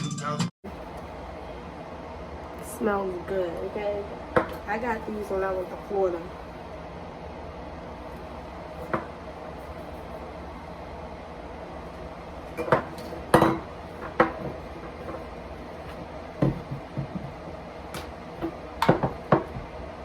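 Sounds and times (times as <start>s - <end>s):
faint steady hum: 0.7s - 20.0s
kitchen items clinking and knocking: 12.5s - 19.7s.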